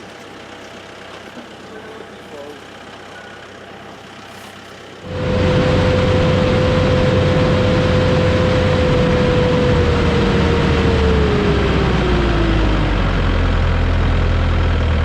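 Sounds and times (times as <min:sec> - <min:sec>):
jet engine whine and roar: 0:05.0 - 0:15.0.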